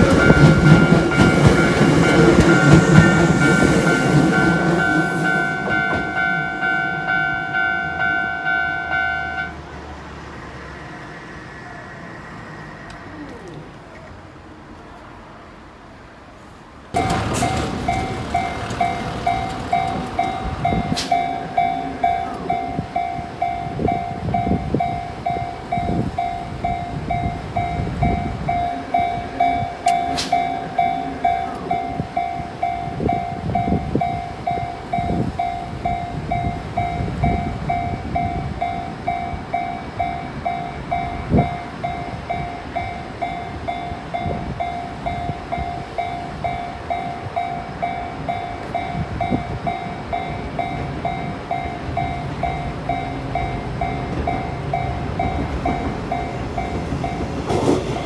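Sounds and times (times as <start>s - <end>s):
train wheels clattering: 0.0s - 7.9s, 17.0s - 39.3s, 48.6s - 58.0s
level crossing bell ringing: 0.0s - 9.6s, 17.0s - 57.5s
train rumbling past: 0.0s - 58.0s.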